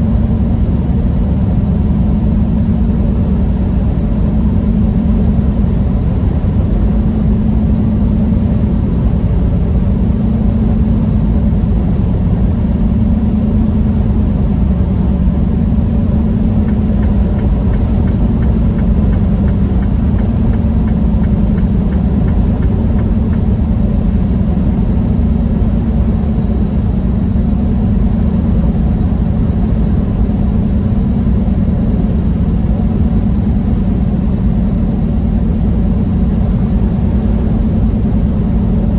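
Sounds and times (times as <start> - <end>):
truck engine drone: 0.0 - 38.9
road noise: 11.7 - 26.8.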